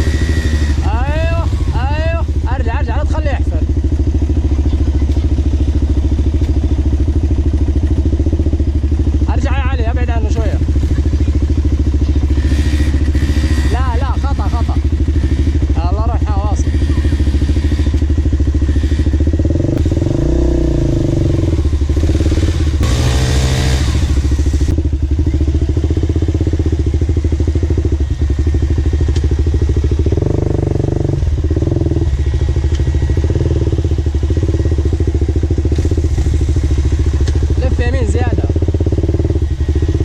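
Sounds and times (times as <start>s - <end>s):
dirt bike engine revving: 0.0s - 40.0s.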